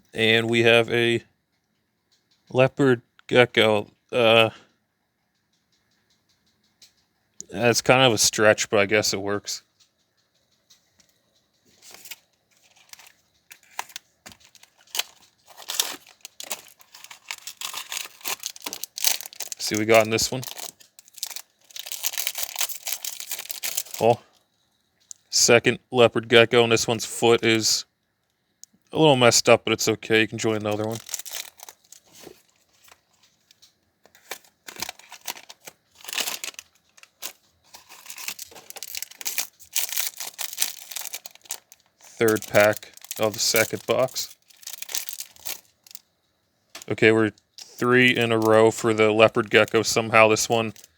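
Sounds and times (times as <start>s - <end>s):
packaging torn and crinkled: 11.8s - 24.1s, 30.6s - 46.0s.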